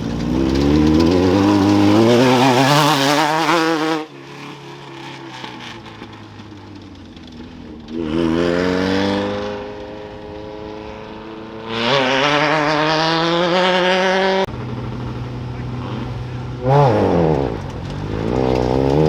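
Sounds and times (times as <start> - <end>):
off-road vehicles revving hard: 0.0 - 19.0
engine idling: 14.5 - 19.0.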